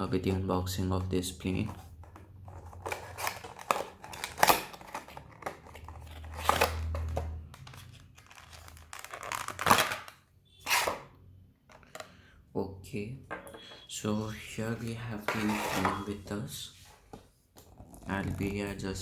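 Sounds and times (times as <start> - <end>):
packaging crinkling and rustling: 2.4 - 10.2
packaging tearing: 2.9 - 10.2.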